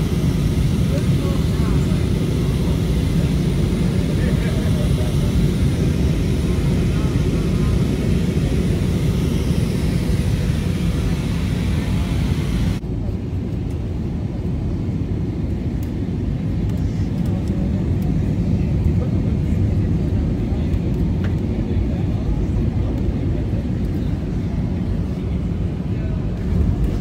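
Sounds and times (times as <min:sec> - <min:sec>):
vehicle rumble in motion: 0:26.2 - 0:27.0.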